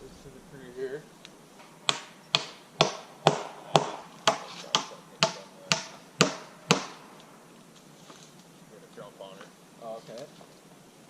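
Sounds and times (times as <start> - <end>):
hammer striking nail into wood: 1.9 - 7.1.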